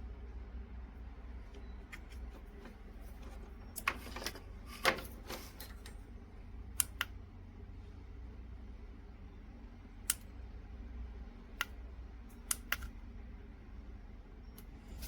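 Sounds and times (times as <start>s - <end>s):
steady low hum: 0.0s - 15.0s
handling clicks and scrapes: 1.5s - 6.0s.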